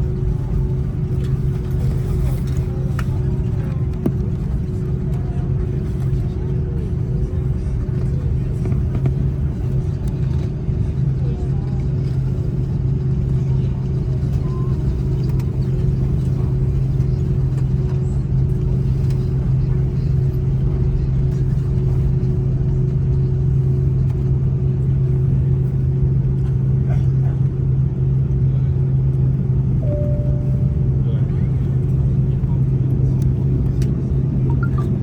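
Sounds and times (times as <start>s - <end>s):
aircraft cabin engine drone: 0.0s - 35.0s
faint steady hum: 29.8s - 35.0s.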